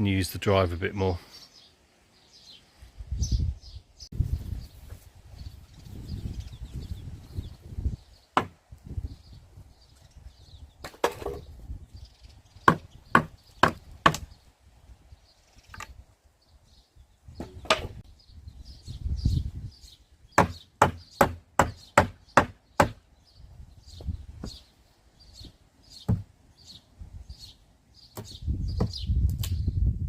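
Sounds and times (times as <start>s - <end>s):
birds chirping faintly: 0.0s - 29.9s
hammer striking wood: 8.4s - 8.6s, 12.7s - 14.2s, 20.4s - 23.0s, 26.1s - 26.3s.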